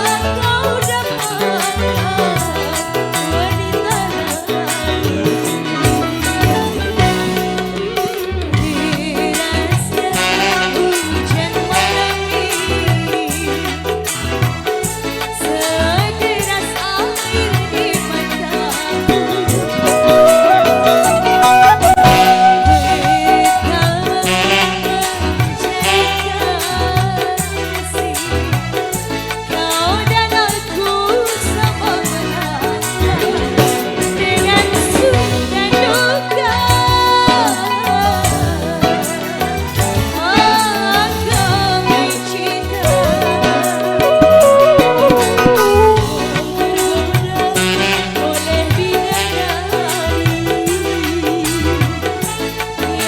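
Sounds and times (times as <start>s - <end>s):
hand drum pattern: 0.0s - 53.0s
wavering melody line: 18.9s - 24.8s, 37.3s - 46.8s.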